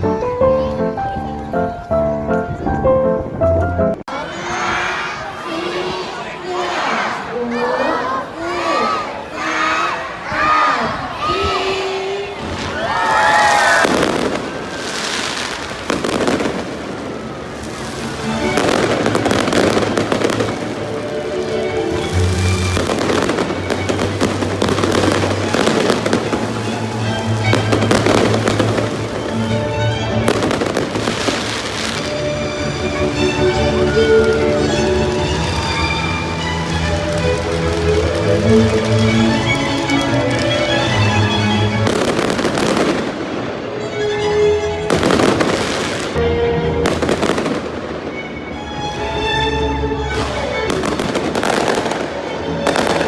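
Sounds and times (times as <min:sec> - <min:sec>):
music with held notes and bass: 0:00.0 - 0:04.0
music with sustained notes: 0:00.0 - 0:04.1, 0:16.0 - 0:53.0
fireworks crackling and popping: 0:12.4 - 0:29.4, 0:30.2 - 0:32.2, 0:34.2 - 0:40.6, 0:41.8 - 0:43.6, 0:44.9 - 0:46.2, 0:50.2 - 0:53.0.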